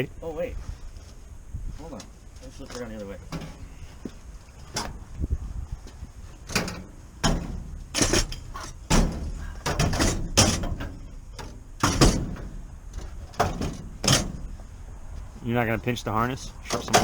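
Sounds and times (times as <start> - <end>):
seat clunks and knocks: 5.9 - 15.3, 16.6 - 17.0.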